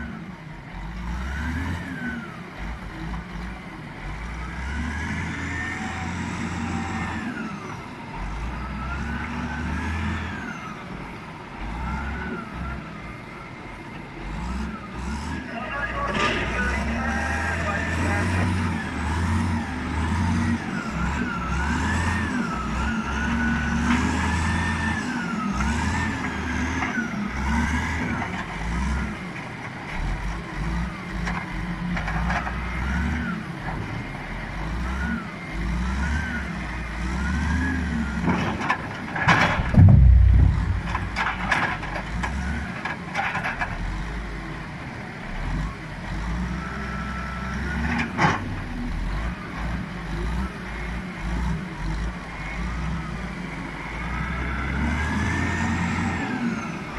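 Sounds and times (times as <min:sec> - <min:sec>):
wheel loader engine revving: 0:16.0 - 0:29.0, 0:34.6 - 0:44.4
engine whine: 0:38.0 - 0:43.8
heavy thud of logs dropping: 0:39.2 - 0:42.4
sharp knock: 0:39.6 - 0:41.7.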